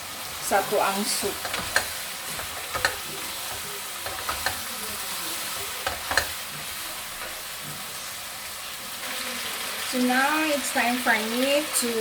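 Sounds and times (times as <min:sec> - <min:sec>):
chicken sizzling in a pot: 0:00.0 - 0:12.0
spoon clicking against pot: 0:01.4 - 0:03.0, 0:04.0 - 0:04.6, 0:05.8 - 0:06.4.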